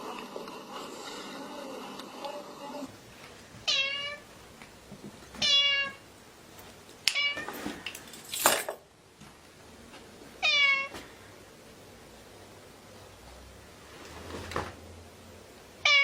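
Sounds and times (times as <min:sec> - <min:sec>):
cat meowing: 0:03.6 - 0:04.2, 0:05.4 - 0:06.0, 0:10.4 - 0:10.9.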